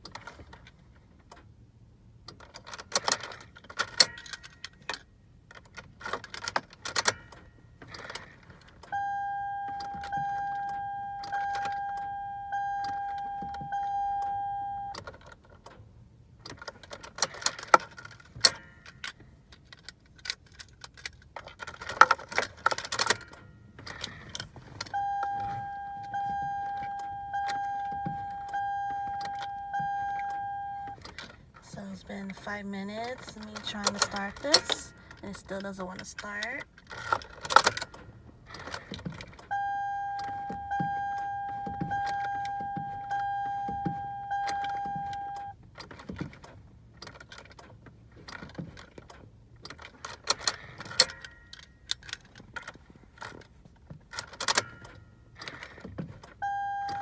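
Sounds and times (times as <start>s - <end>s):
keys jangling in ignition: 2.3s - 9.0s, 16.4s - 57.0s
dashboard warning chime: 7.0s - 7.8s, 8.9s - 15.0s, 18.4s - 19.1s, 24.8s - 36.7s, 39.5s - 45.6s, 54.5s - 55.4s, 56.4s - 57.0s.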